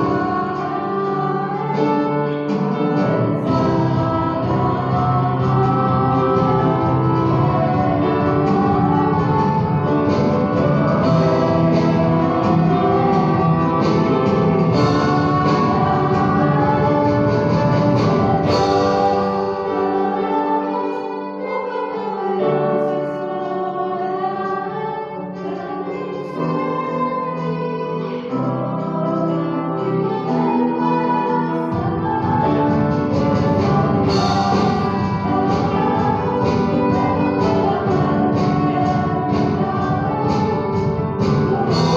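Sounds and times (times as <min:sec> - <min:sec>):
song with singing and instruments: 0:00.0 - 0:41.9.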